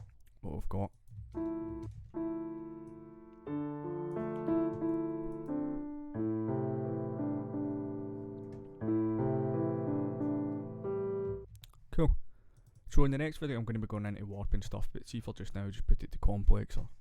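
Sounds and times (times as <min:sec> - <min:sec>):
higher piano melody notes: 0:01.3 - 0:11.5
piano chords: 0:01.3 - 0:11.5.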